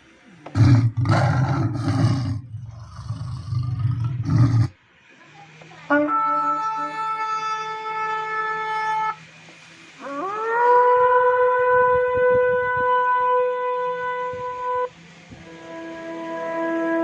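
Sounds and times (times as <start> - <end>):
keyboard animal roar: 0.5 - 4.8
keyboard horn-like held note: 5.9 - 9.2.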